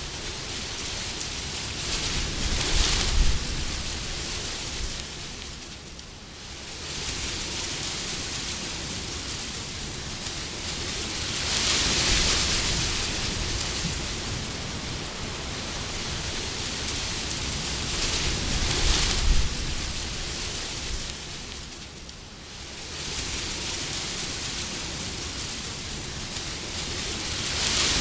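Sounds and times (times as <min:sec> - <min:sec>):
wind blowing in gusts: 0:00.0 - 0:28.0.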